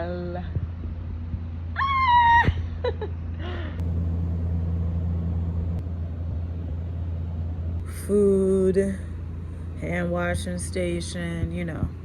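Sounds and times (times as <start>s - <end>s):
steady low hum: 0.0s - 12.0s
woman's high-pitched cry: 1.8s - 2.9s.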